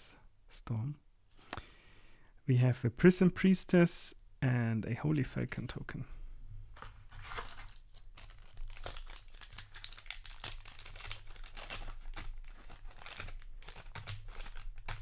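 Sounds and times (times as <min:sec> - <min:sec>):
wrapper crinkling: 0:06.8 - 0:15.0.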